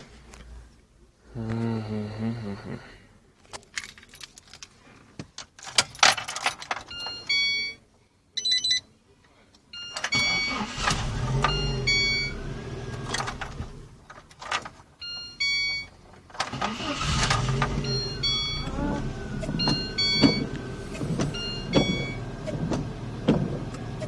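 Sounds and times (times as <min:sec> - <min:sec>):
dashboard warning chimes: 0:06.9 - 0:08.9, 0:09.7 - 0:13.1, 0:15.0 - 0:16.0, 0:16.7 - 0:22.7
car engine starting and running: 0:10.0 - 0:14.7, 0:16.3 - 0:24.0.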